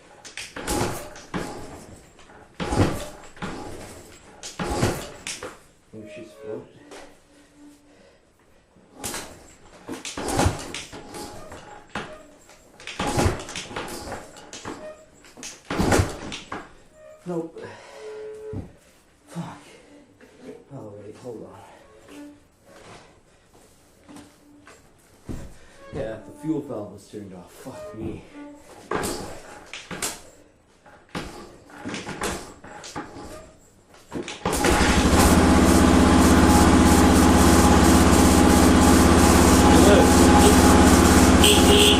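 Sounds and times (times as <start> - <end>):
motorcycle kick-start attempts: 34.2 - 36.8
motorcycle engine idling: 34.7 - 41.9.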